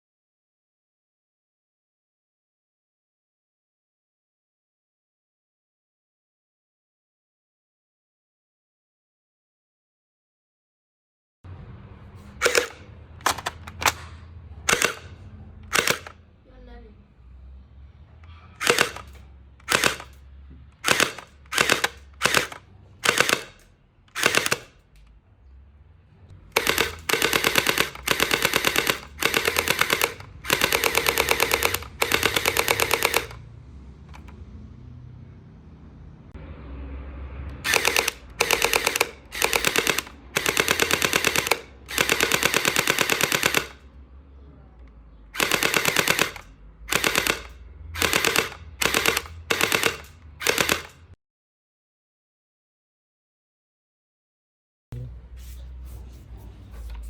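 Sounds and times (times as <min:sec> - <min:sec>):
toy blaster firing: 0:14.7 - 0:15.1, 0:15.7 - 0:16.2, 0:18.6 - 0:20.2, 0:20.8 - 0:24.8, 0:26.5 - 0:33.4, 0:37.6 - 0:43.8, 0:45.4 - 0:51.0.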